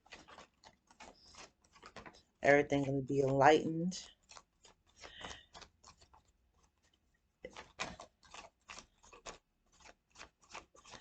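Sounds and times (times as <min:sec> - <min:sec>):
cards being shuffled: 0:00.0 - 0:03.4, 0:04.0 - 0:11.0.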